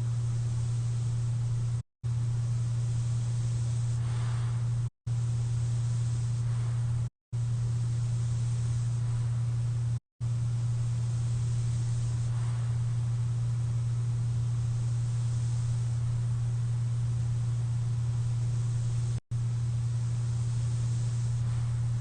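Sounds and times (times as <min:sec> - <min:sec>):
machine low hum: 0:00.0 - 0:22.0
steady hiss of air: 0:00.0 - 0:22.0
sleeper breathing through mask: 0:04.0 - 0:04.8.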